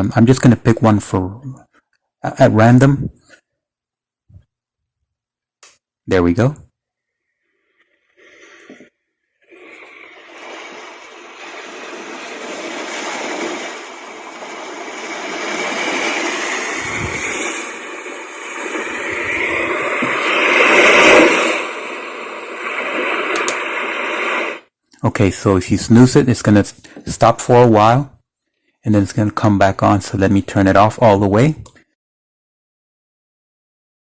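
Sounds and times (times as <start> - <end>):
hissing alarm tone from speaker: 9.6 - 24.6.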